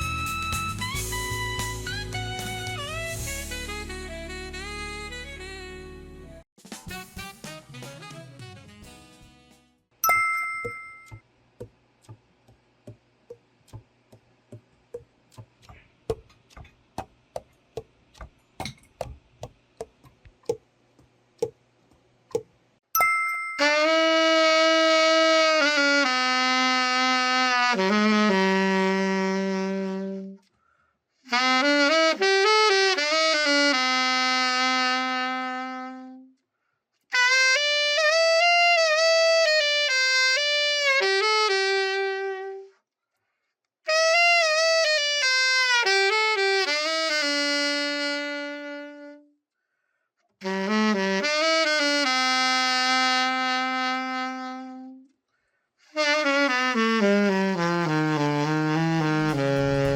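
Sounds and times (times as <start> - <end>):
solo alto saxophone: 0.0 - 9.7, 23.6 - 30.5, 31.2 - 36.4, 37.1 - 42.8, 43.9 - 49.4, 50.4 - 55.2, 55.8 - 59.9.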